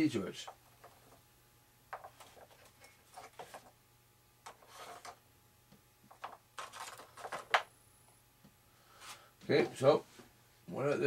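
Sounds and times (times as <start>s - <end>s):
small parts clicking and rustling: 6.1s - 7.7s.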